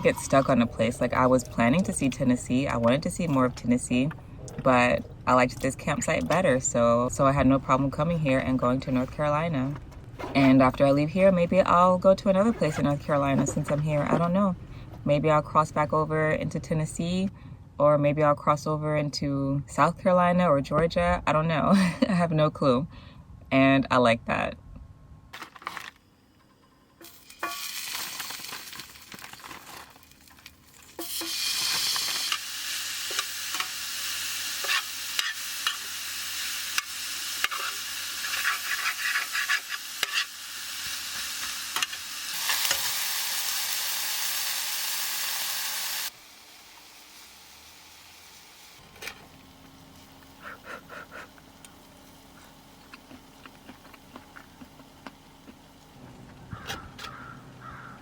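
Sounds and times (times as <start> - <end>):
food sizzling in a frying pan: 27.0 - 29.0, 30.8 - 48.8
utensil scraping a pan: 37.4 - 40.4.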